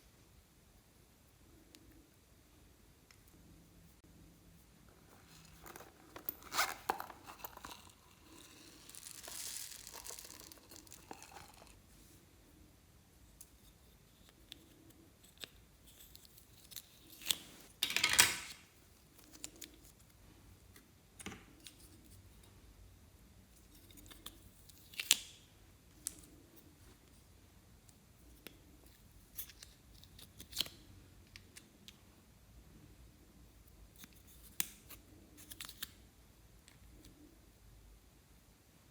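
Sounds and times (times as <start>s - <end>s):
slime tearing and crinkling: 6.4s - 11.8s.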